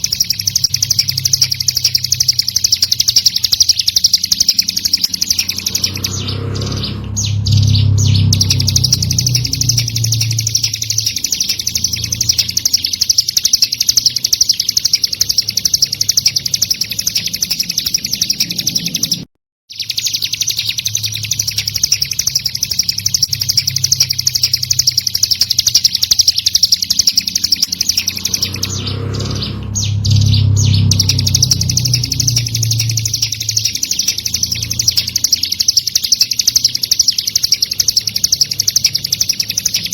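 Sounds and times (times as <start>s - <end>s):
bird chirping fast high notes: 0.0s - 39.9s
low rumble: 5.4s - 12.5s, 27.8s - 34.0s.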